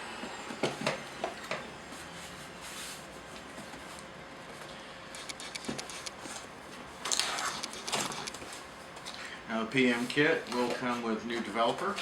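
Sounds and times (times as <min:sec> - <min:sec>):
rustling scrape: 0:01.8 - 0:04.1, 0:05.3 - 0:10.2
clicks and rubbing of handled objects: 0:05.2 - 0:09.2.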